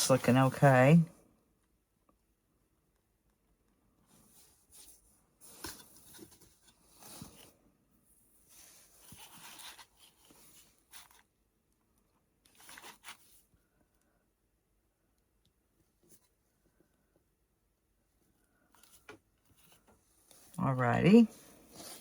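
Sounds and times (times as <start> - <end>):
paper rustling: 8.5 - 11.3, 12.5 - 13.5, 21.3 - 22.0.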